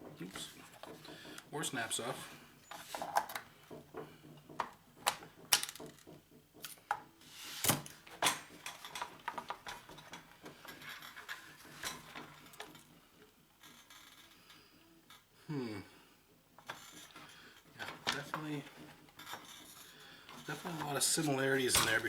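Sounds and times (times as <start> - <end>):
plastic and metal parts rattling: 0.1 - 13.0, 16.6 - 22.0.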